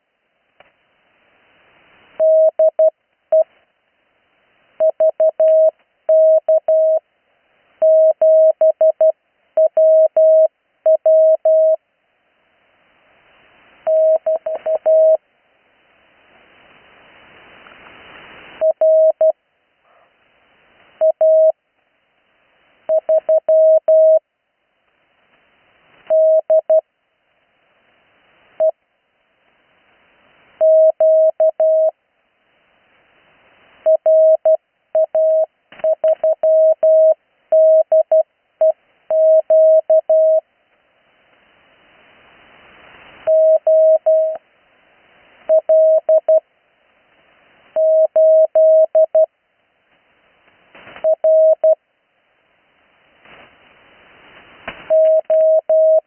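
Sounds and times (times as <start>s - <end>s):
receiver hiss: 0.0s - 56.0s
morse code tone: 22.9s - 24.2s, 33.9s - 40.4s, 43.3s - 44.4s, 47.8s - 49.3s, 51.1s - 51.8s, 54.9s - 56.0s.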